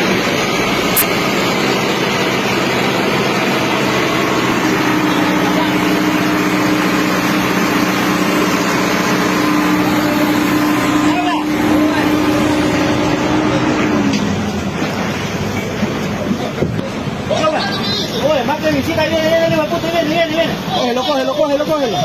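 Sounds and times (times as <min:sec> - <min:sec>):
engine running: 0:00.0 - 0:17.4.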